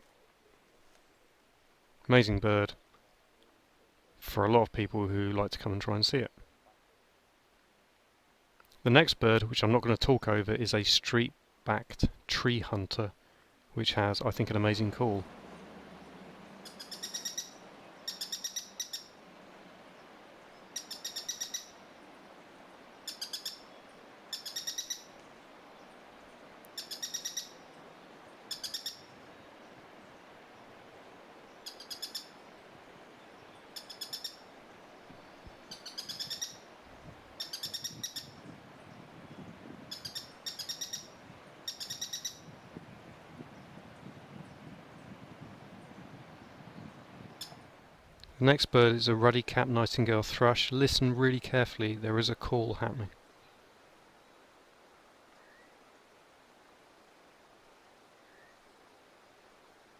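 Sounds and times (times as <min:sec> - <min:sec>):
bird calling rapid high notes: 0:15.3 - 0:19.2.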